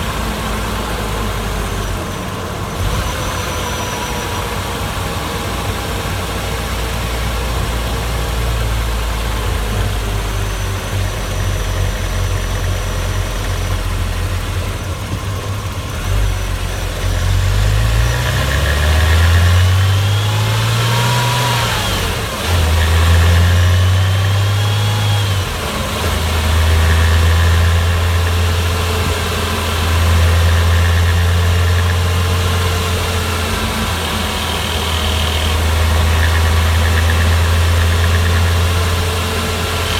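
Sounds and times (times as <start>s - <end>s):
car engine droning: 0.0s - 39.9s.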